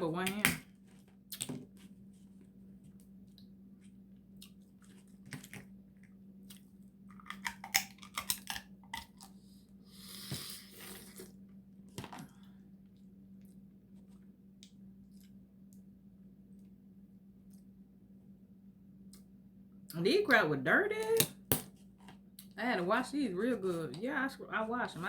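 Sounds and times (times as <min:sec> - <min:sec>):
chewing: 0:06.5 - 0:09.4
crab shell cracking: 0:07.1 - 0:09.3.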